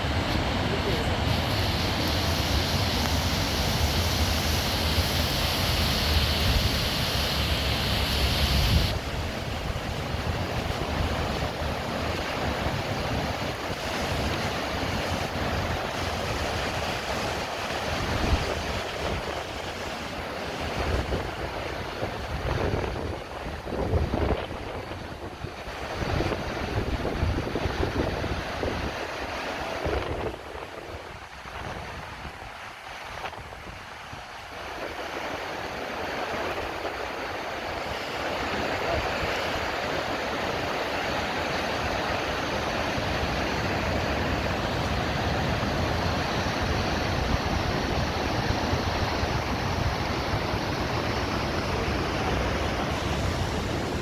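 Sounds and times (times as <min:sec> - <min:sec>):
waterfall rushing: 0:00.0 - 0:22.3, 0:36.7 - 0:54.0
wind buffeting microphone: 0:20.5 - 0:29.0, 0:41.9 - 0:54.0.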